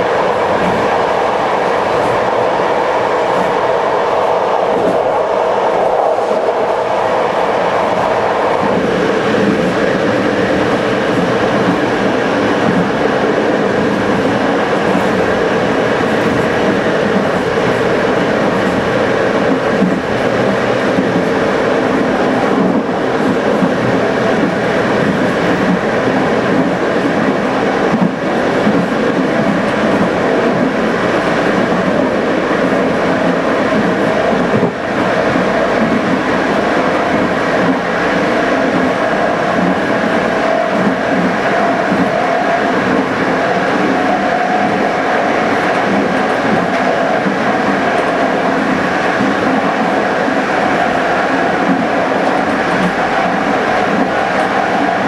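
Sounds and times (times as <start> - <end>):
train wheels rolling on rail: 0.0 - 55.0
track knocks: 7.3 - 30.7.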